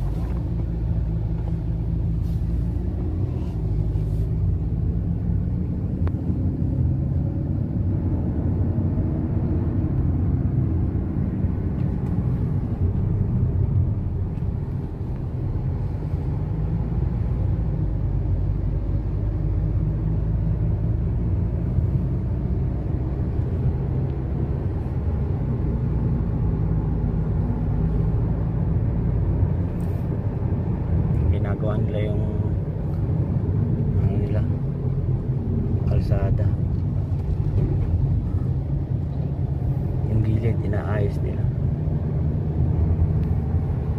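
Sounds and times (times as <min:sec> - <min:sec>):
car engine running: 0:00.0 - 0:43.9.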